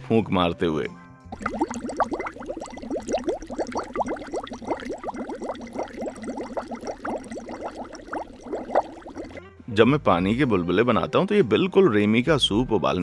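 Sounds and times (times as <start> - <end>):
bubbling through a straw in water: 1.3 - 9.4.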